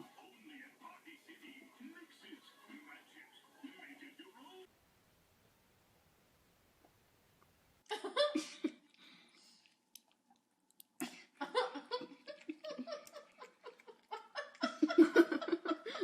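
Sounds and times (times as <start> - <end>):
person giggling: 11.0 - 16.0.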